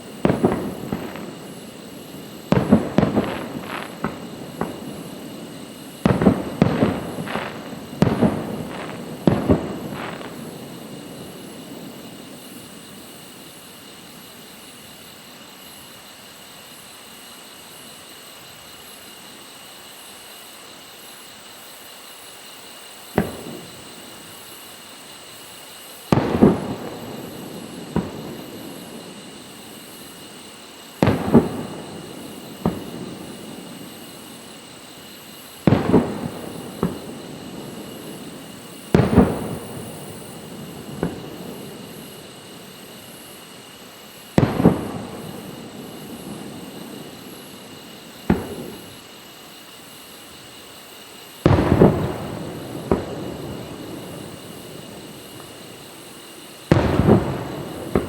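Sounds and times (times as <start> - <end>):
firework shells booming: 0.0 - 13.9, 23.1 - 24.6, 26.0 - 43.5, 44.3 - 49.0, 51.4 - 58.0
firework crack with echo: 0.0 - 58.0.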